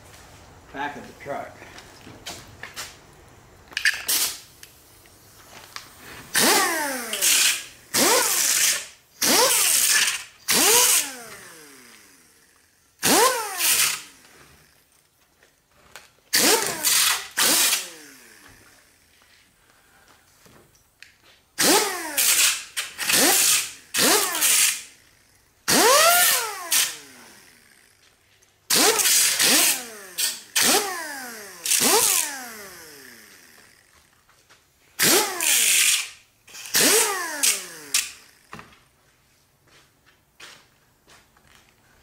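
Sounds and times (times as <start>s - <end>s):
power tool whining: 6.0s - 14.9s, 16.3s - 19.2s, 21.6s - 28.1s, 28.7s - 34.1s, 35.0s - 38.7s.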